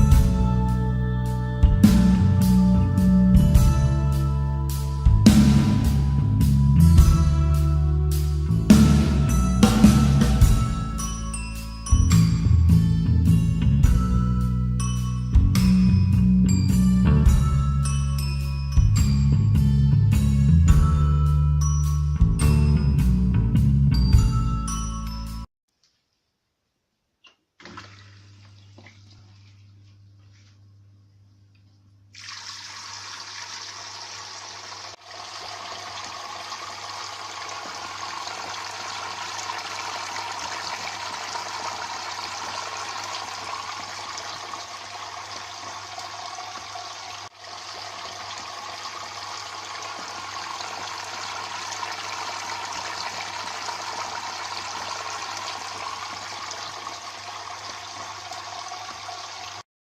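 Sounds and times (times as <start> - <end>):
fountain water trickling and splashing: 32.2 - 59.6.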